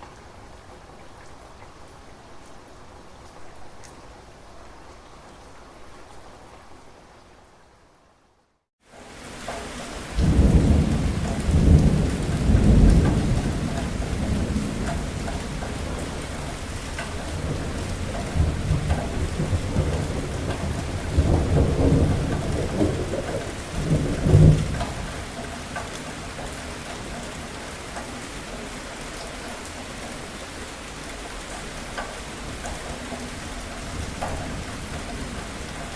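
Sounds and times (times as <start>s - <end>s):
heavy rain: 0.0s - 35.9s
deep rolling thunder: 10.1s - 25.4s.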